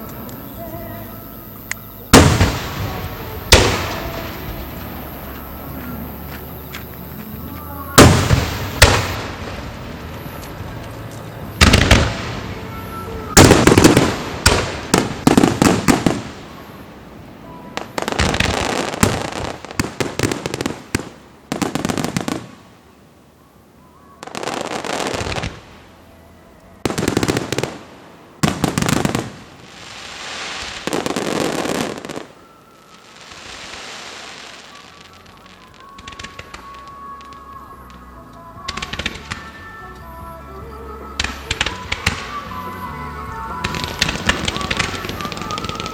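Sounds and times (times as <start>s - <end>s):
firework crackling: 0.0s - 22.9s, 24.2s - 26.0s, 26.8s - 45.9s
firework shells bursting: 8.0s - 9.6s, 43.6s - 45.9s.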